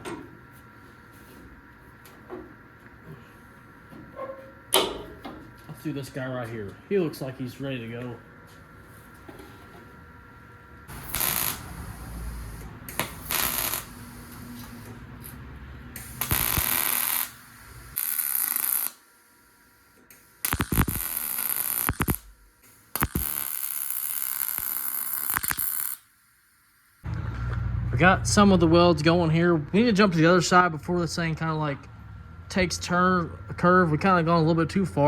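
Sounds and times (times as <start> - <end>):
welding arc crackling and hissing: 10.9 - 27.1.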